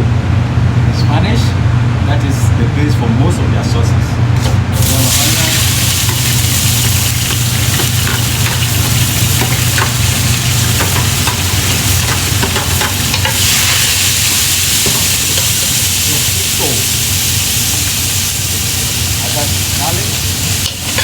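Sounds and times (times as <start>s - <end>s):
steady low hum: 0.0s - 21.0s
onions sizzling in oil: 4.8s - 21.0s.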